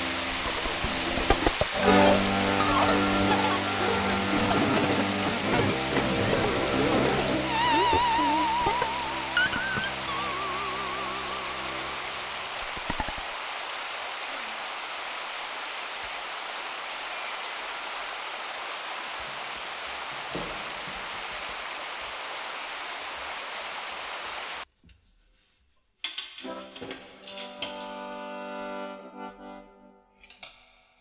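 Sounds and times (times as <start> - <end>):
accordion music: 0.0 - 11.9, 26.4 - 30.2
rushing stream water: 0.0 - 24.6.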